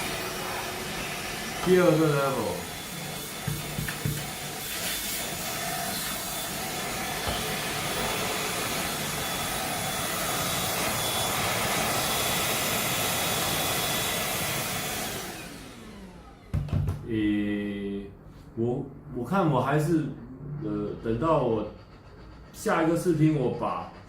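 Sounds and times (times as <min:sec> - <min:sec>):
handheld vacuum cleaner running: 0:00.0 - 0:16.8.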